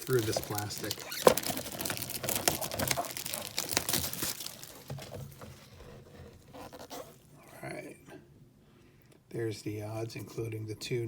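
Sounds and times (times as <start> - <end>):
plastic shrink-wrap tearing: 0.0 - 5.6, 6.4 - 7.2.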